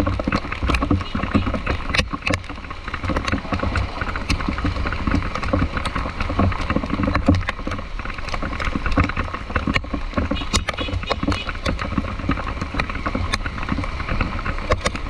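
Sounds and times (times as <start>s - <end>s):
traffic rumble and tyre noise: 0.0s - 15.0s.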